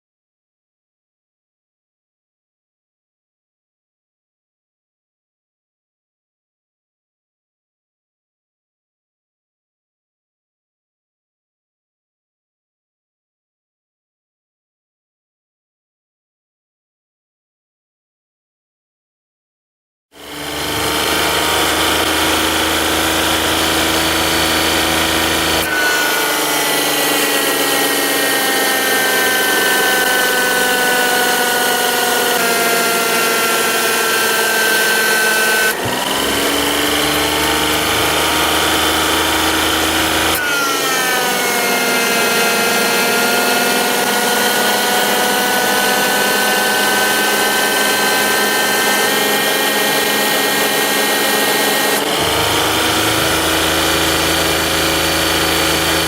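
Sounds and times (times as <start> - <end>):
air conditioning compressor whine: 52.1 - 56.0
low hum: 52.2 - 56.0.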